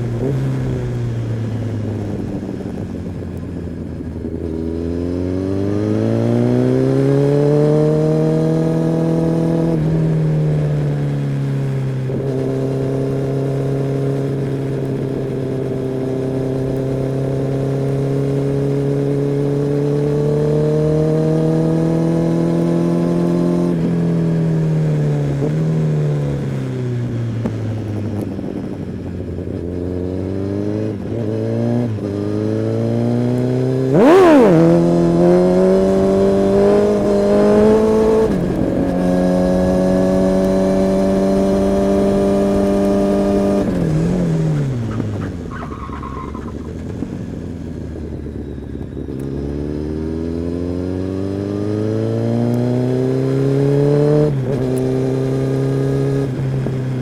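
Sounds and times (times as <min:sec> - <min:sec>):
motorcycle engine and exhaust: 0:00.0 - 0:57.0.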